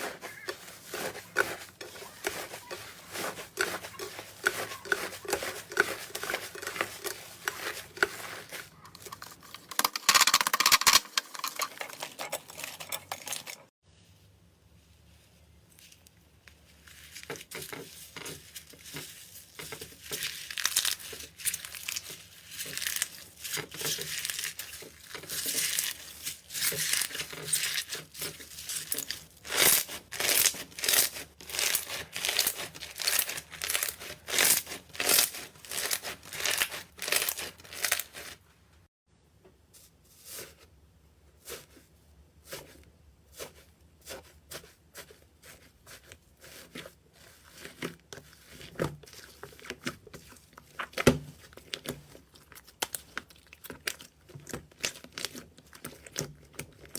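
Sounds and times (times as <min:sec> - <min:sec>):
slime crackling and squishing: 0:00.0 - 0:09.8, 0:15.7 - 0:38.5, 0:41.3 - 0:56.9.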